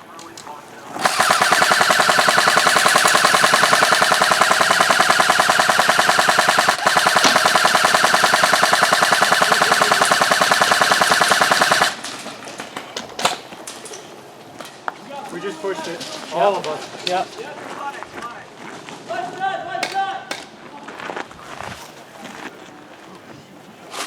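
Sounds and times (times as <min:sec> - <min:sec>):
airsoft gun firing full auto: 0:01.0 - 0:12.1.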